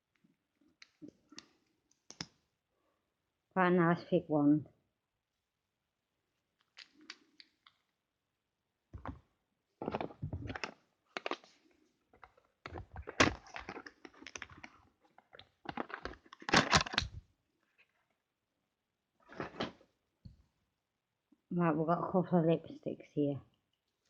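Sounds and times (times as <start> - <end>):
packaging clicking and clattering: 9.8 - 11.6, 12.2 - 17.2, 19.3 - 19.8.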